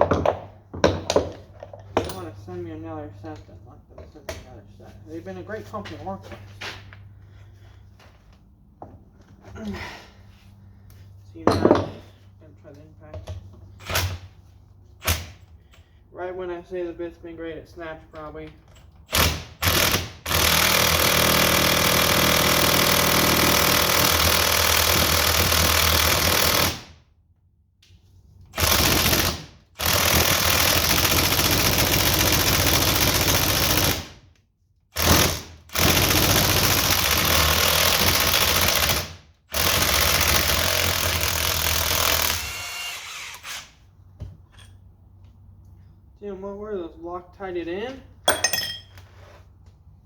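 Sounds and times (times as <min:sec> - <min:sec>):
impact wrench hammering on bolts: 0:48.3 - 0:49.0.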